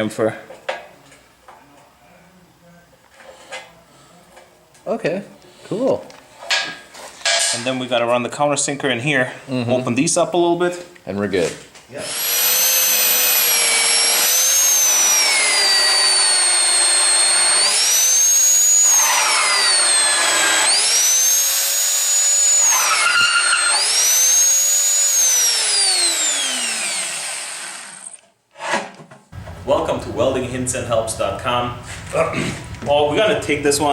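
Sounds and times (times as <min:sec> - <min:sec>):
drill bit chattering on steel: 0:12.0 - 0:27.3
electric drill whining: 0:12.0 - 0:28.2.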